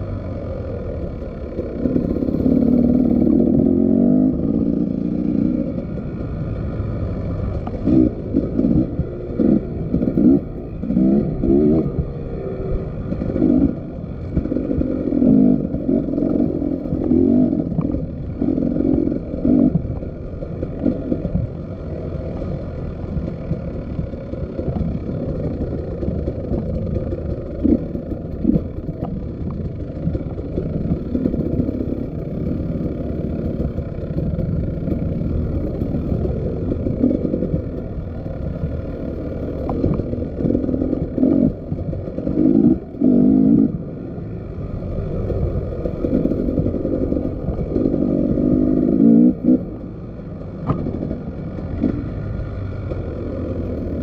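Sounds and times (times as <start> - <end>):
motorcycle engine running: 0.0 - 54.0
sharp knocks and rattles: 13.0 - 43.8, 44.6 - 54.0.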